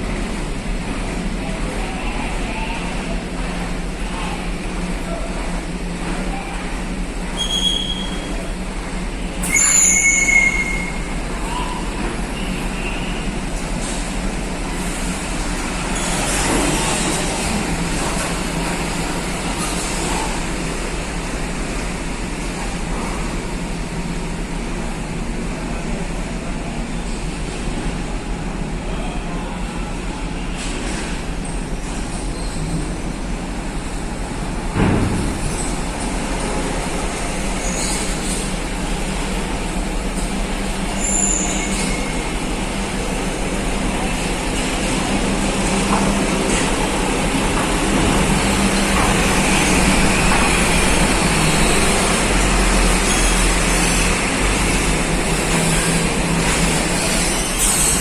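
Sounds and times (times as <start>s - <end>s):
vehicle engines running: 12.0s - 58.0s.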